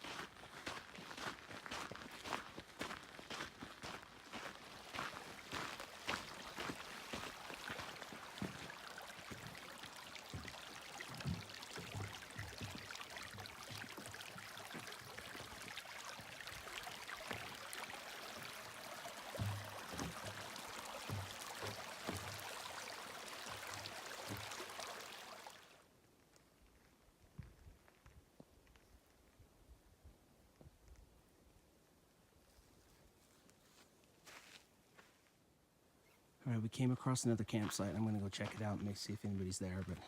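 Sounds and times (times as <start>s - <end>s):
footsteps on dirt trail: 0.0s - 9.6s, 33.4s - 35.3s, 37.6s - 38.9s.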